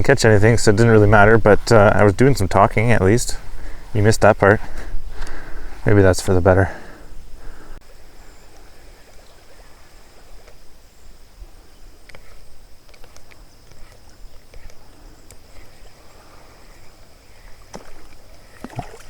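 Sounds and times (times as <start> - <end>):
faint ticks: 4.8 - 5.4, 12.0 - 15.9.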